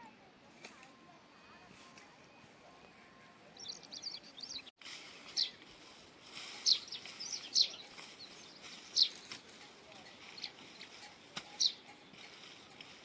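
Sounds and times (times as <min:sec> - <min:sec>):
bird chirping: 0:03.4 - 0:04.7, 0:05.3 - 0:05.6, 0:06.5 - 0:13.0.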